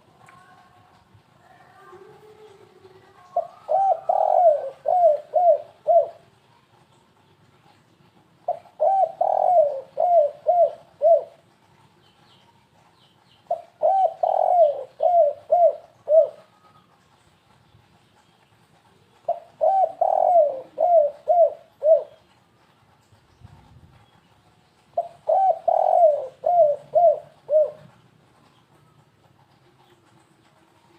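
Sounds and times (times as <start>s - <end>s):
dove cooing: 2.0s - 6.3s, 8.5s - 11.4s, 13.5s - 16.8s, 19.1s - 22.3s, 25.0s - 28.0s.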